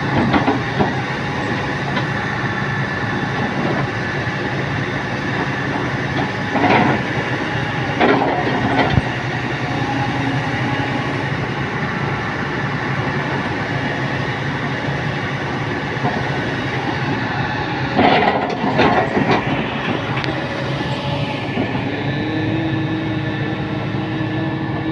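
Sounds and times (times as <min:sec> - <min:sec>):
diesel engine running: 0:00.0 - 0:24.9
metal clanking and scraping: 0:05.9 - 0:11.8, 0:16.0 - 0:21.8.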